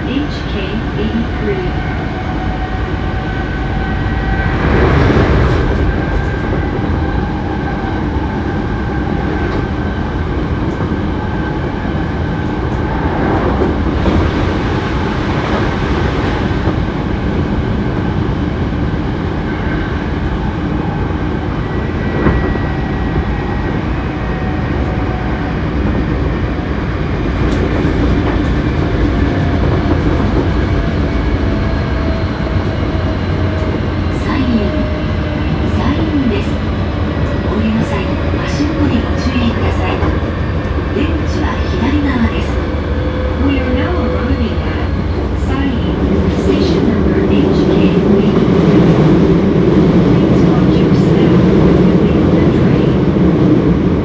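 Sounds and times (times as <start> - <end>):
train wheel rumble on rails: 0.0 - 54.0
rail joint clacks: 4.5 - 18.1, 24.5 - 53.3.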